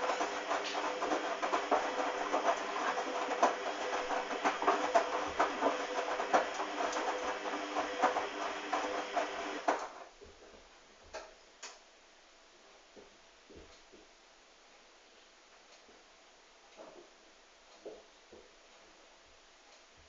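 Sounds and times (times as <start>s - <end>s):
drum clattering: 0.0s - 9.8s
washing machine motor humming: 0.0s - 10.0s.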